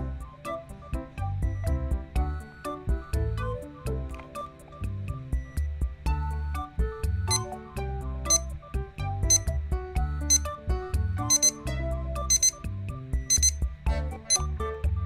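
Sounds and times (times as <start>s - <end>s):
instrumental music with beat: 0.0s - 15.0s
alarm clock beeps: 7.3s - 7.5s, 8.3s - 8.5s, 9.2s - 9.6s, 10.2s - 10.5s, 11.2s - 11.6s, 12.2s - 13.7s, 14.3s - 14.5s.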